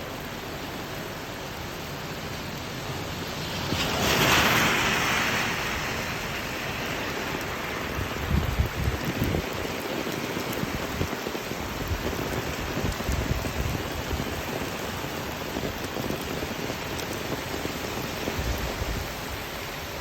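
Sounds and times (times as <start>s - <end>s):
rain falling steadily: 0.0s - 20.0s.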